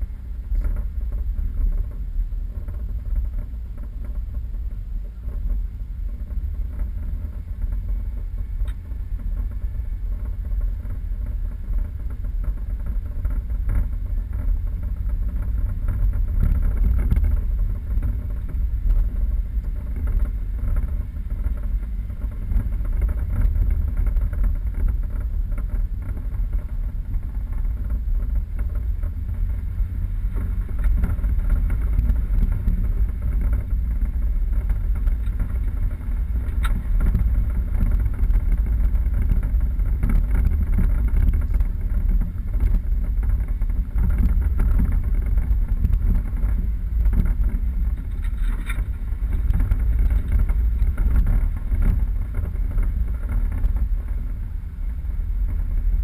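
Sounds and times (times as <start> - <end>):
engine and tyres rumbling: 0.0 - 56.0.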